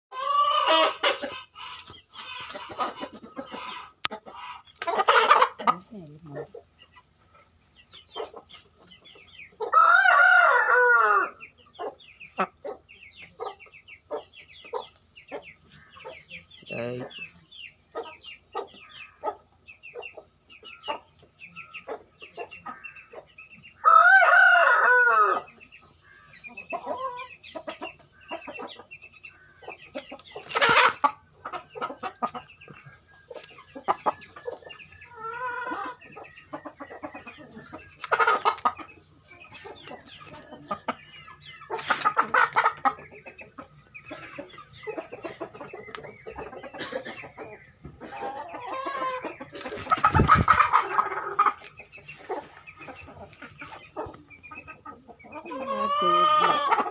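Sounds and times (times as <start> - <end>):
chickens clucking: 0.1 - 56.9
rooster crowing: 9.7 - 11.4, 23.8 - 25.5.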